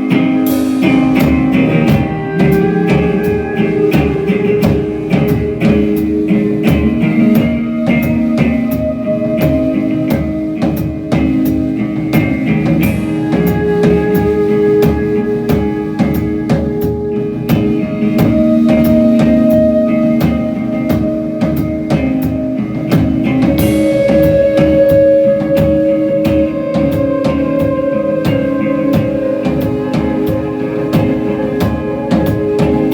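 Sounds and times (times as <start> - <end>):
electric guitars sustained notes: 0.0 - 32.9
steady drum beat: 0.0 - 32.9
cymbal crash: 0.4 - 11.7, 20.0 - 27.8.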